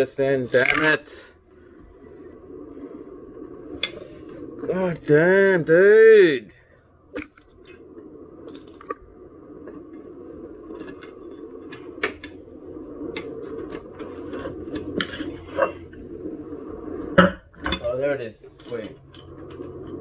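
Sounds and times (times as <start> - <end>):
steady low hum: 0.0 - 17.2
hand tools clinking: 0.5 - 1.1, 8.5 - 8.8.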